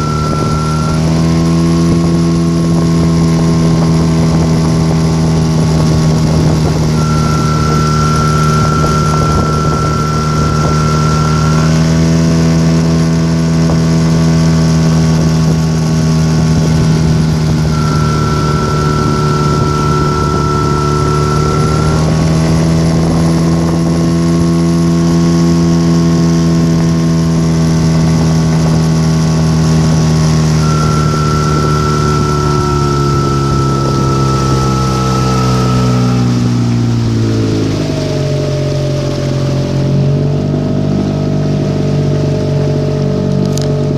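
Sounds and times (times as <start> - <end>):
high whistle: 0.0 - 3.6, 6.3 - 13.0, 17.6 - 25.2, 30.3 - 39.5
outboard motor running: 0.0 - 43.9.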